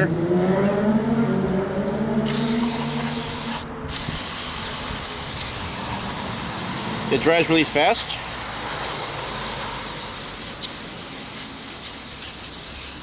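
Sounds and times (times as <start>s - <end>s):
aerosol spray hissing: 2.2s - 13.0s.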